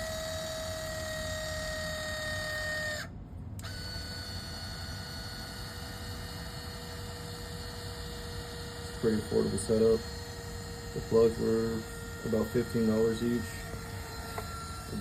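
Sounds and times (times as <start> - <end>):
high-pitched inverter whine: 0.0 - 15.0.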